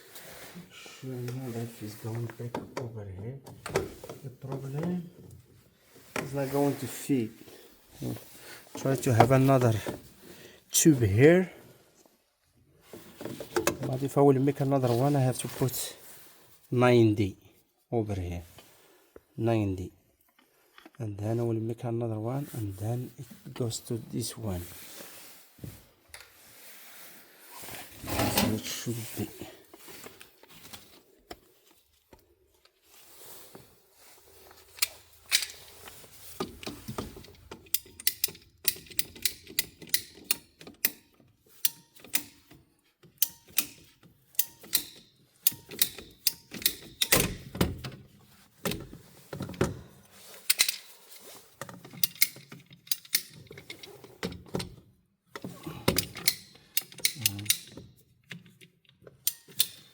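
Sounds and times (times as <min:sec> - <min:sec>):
hand tools clicking and knocking: 0:34.6 - 0:48.0, 0:50.4 - 0:54.7, 0:55.3 - 0:59.9.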